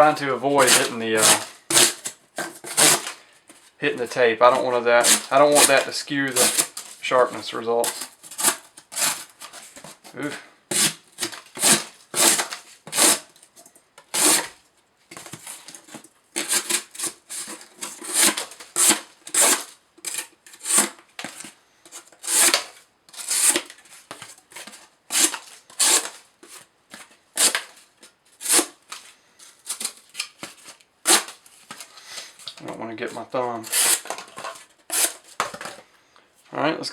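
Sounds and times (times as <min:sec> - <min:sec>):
knife blade slicing cardboard: 0:00.6 - 0:03.2, 0:04.5 - 0:07.0, 0:07.8 - 0:10.0, 0:10.7 - 0:13.3, 0:14.1 - 0:14.5, 0:15.2 - 0:21.4, 0:22.2 - 0:27.8, 0:28.4 - 0:29.0, 0:29.7 - 0:31.8, 0:33.6 - 0:35.8.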